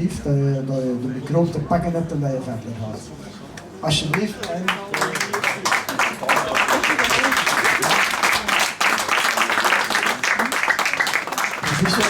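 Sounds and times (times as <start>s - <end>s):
voices: 2.7s - 12.0s
audience clapping: 4.0s - 12.0s.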